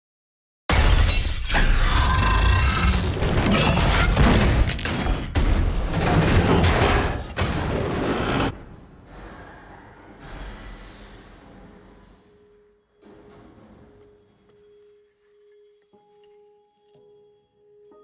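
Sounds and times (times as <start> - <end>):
loud crashing and smashing: 0.7 - 9.6.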